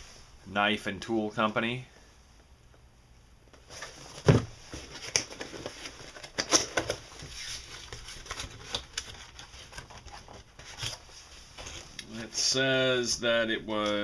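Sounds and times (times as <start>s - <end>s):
box thump: 4.2s - 4.6s.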